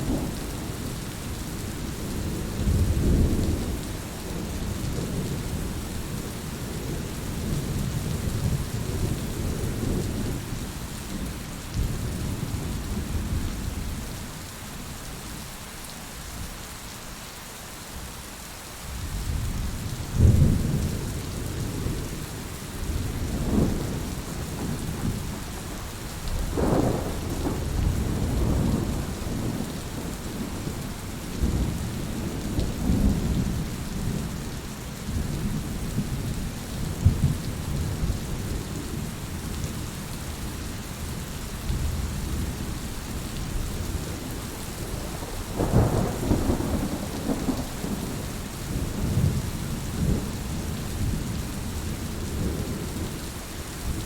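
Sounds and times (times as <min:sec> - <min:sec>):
heavy rain: 0:00.0 - 0:54.0
rolling thunder: 0:22.8 - 0:34.4, 0:43.5 - 0:53.1.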